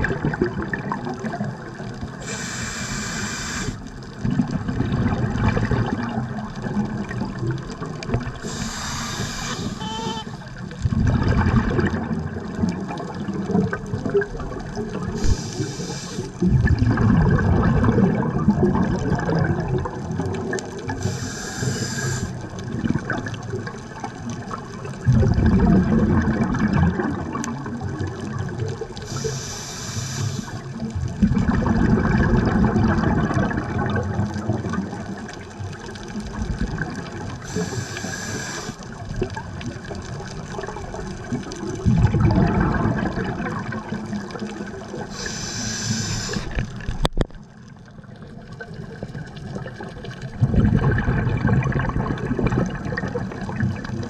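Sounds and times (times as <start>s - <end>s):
exhaled air bubbling: 0.0s - 54.0s
watery murmur: 0.0s - 54.0s
diver inhaling through regulator: 2.2s - 3.9s, 8.4s - 10.4s, 15.1s - 16.4s, 20.9s - 22.4s, 29.0s - 30.7s, 37.4s - 38.8s, 45.0s - 46.7s.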